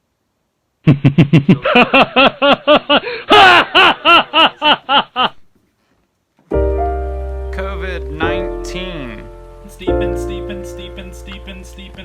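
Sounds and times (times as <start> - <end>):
person laughing: 0.8 - 5.5.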